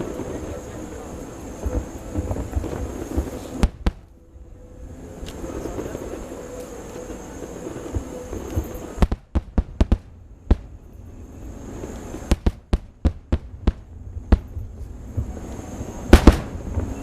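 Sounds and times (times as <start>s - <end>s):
fireworks bangs: 0.0s - 17.0s.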